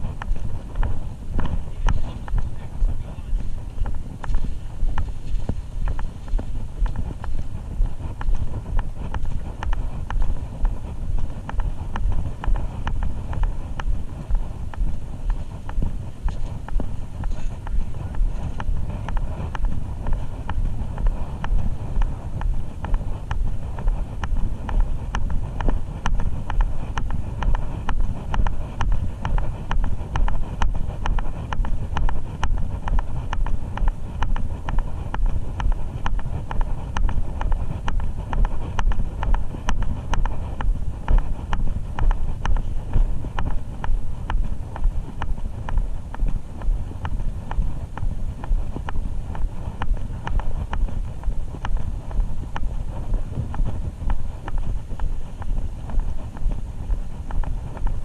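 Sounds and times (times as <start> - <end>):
footsteps walking: 0.0 - 58.0
wind buffeting microphone: 0.0 - 58.0.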